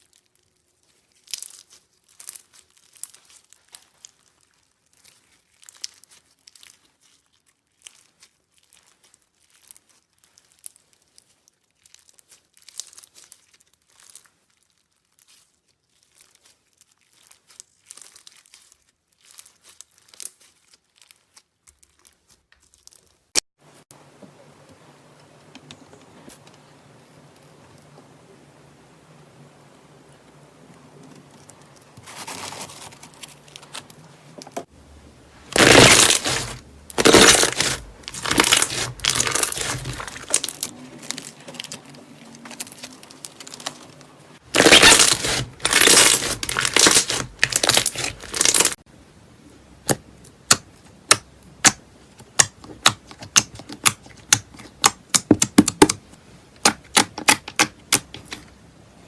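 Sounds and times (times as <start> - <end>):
slime handling noise: 31.0 - 48.8
sharp clicks and pops: 35.4 - 41.8, 44.4 - 48.8.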